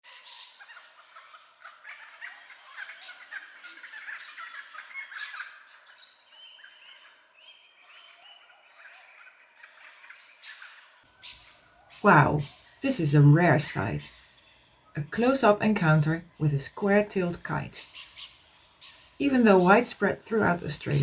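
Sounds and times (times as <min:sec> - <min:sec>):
birds calling harshly: 0:00.1 - 0:21.0.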